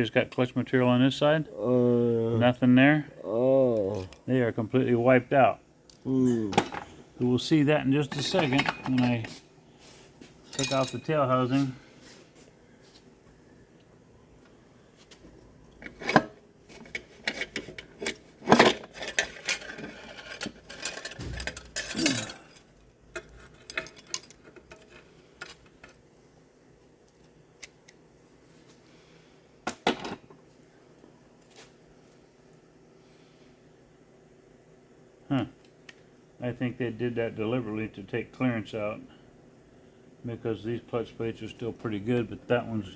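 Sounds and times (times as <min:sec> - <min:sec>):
metal parts clinking and clanking: 0:08.2 - 0:09.2, 0:10.5 - 0:11.1, 0:16.9 - 0:26.0.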